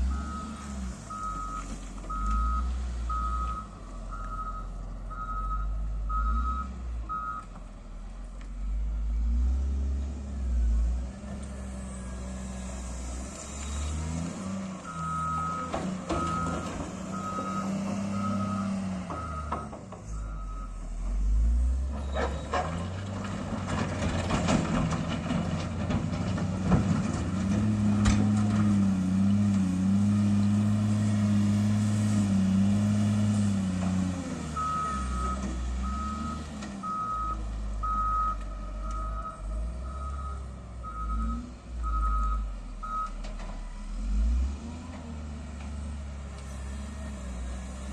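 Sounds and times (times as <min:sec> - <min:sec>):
diesel engine running: 0:00.0 - 0:47.9
reversing alarm beeping: 0:00.1 - 0:07.5, 0:14.9 - 0:20.8, 0:34.6 - 0:43.2.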